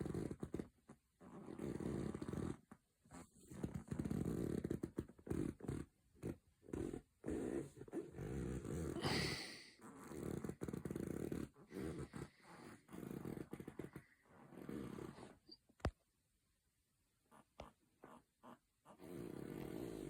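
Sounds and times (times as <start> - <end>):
person snoring: 8.6 - 10.4
hissing breath: 9.0 - 9.8.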